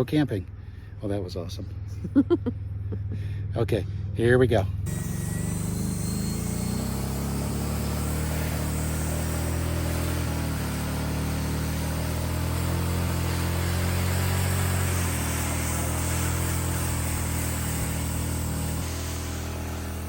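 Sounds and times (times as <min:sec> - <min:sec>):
small engine running: 0:01.7 - 0:20.0.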